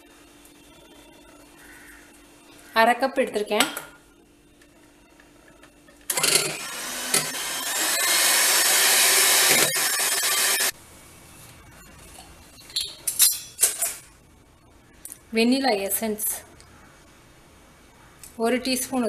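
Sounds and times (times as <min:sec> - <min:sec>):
electric mixer beating: 0:06.1 - 0:10.7.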